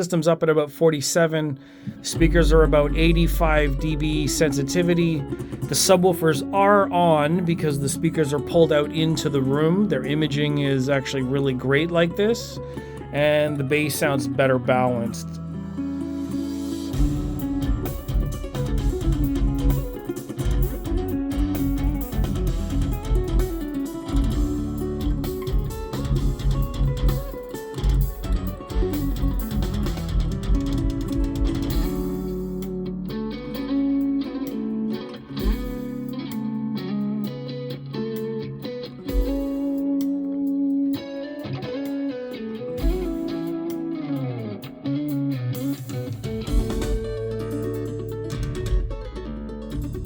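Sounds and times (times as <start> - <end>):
music with plucked guitar and bass: 0.0 - 50.0
deep bass hit: 17.0 - 19.8.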